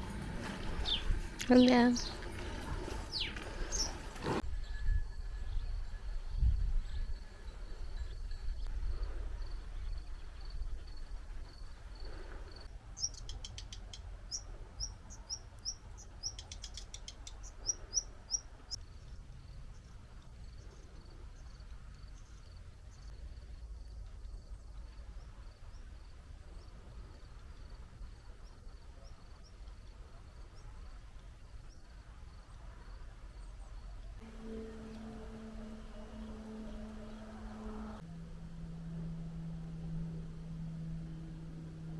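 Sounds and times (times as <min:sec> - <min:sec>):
low rumble: 0:00.0 - 0:12.7, 0:34.2 - 0:41.9.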